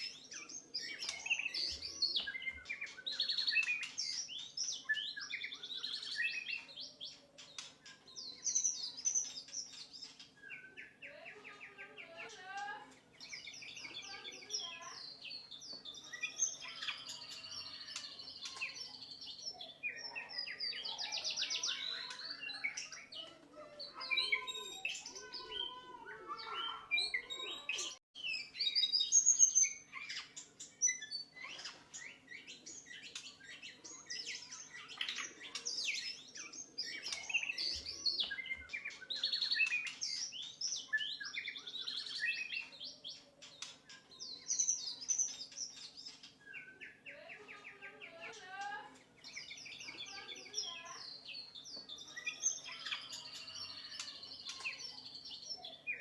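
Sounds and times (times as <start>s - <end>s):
bird singing whistles and trills: 26.4s - 47.0s.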